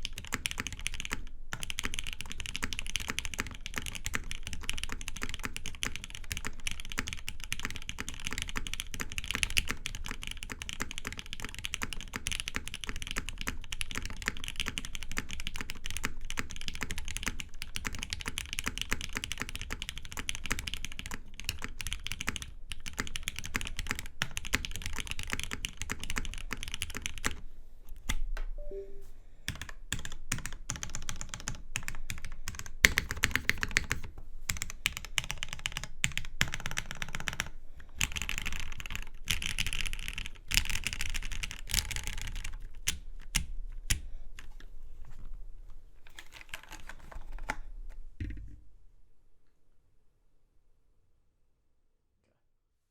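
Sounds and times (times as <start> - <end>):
mechanical keyboard typing: 0.0 - 27.4, 29.5 - 44.0.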